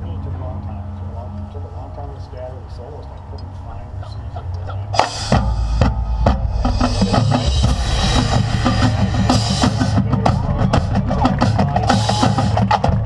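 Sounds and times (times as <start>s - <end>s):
cymbal crash: 5.0s - 10.1s
snare and bass drums: 5.0s - 13.0s.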